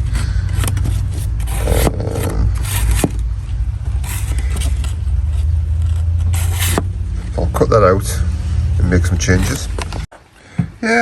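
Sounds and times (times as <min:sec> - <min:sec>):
cardboard scraping on car body: 0:00.0 - 0:07.3.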